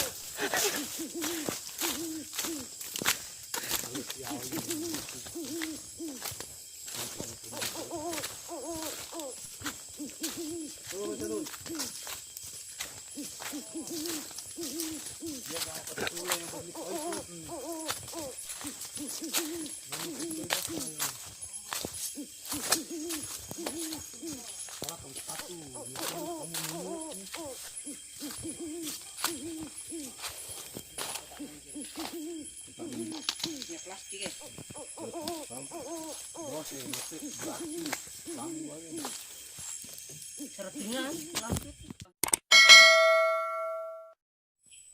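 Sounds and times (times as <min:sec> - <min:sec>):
hooting animal calls: 0:00.0 - 0:39.5
faint high insect buzz: 0:00.0 - 0:41.9
animal hooting calls: 0:03.8 - 0:06.3, 0:07.2 - 0:12.0, 0:13.1 - 0:21.1, 0:22.1 - 0:24.7.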